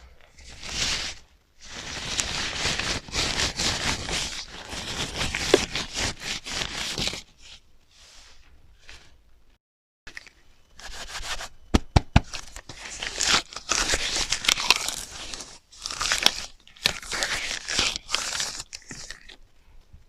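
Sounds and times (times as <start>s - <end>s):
sharp knock: 11.7s - 12.3s.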